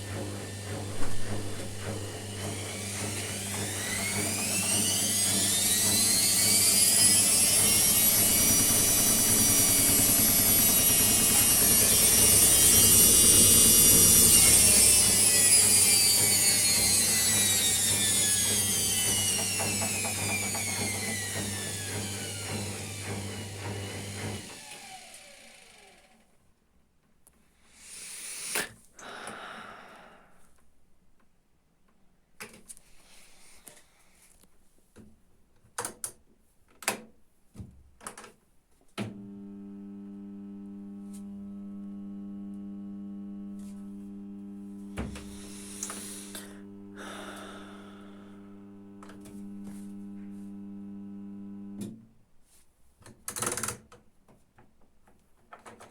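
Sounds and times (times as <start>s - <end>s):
washing machine spin whine: 0.0s - 26.1s, 39.1s - 51.8s.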